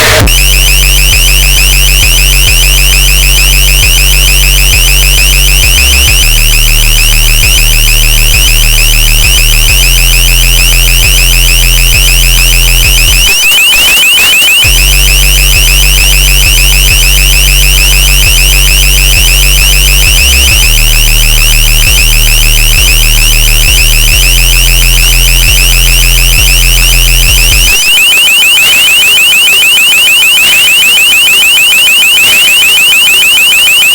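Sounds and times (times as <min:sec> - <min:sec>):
low bass layer: 0:00.0 - 0:13.2, 0:14.7 - 0:27.7
shrill warbling alarm tone: 0:00.0 - 0:33.9.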